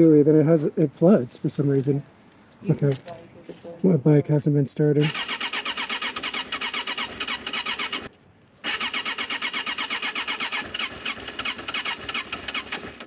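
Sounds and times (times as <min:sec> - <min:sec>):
motorcycle starter cranking engine: 0:05.0 - 0:13.0.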